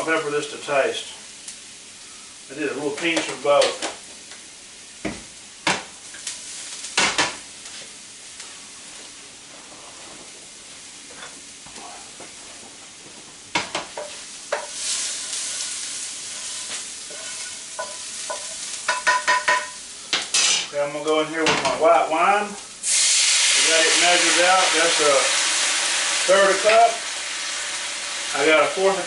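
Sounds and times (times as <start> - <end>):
onions sizzling in a pan: 0.0 - 29.0
utensil scraping a pan: 14.0 - 19.8.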